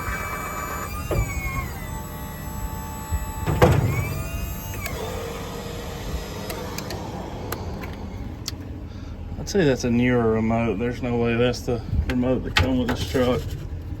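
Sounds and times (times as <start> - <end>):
crane motor whining: 0.0 - 11.5
crane clunk: 0.3 - 2.2, 2.9 - 8.7.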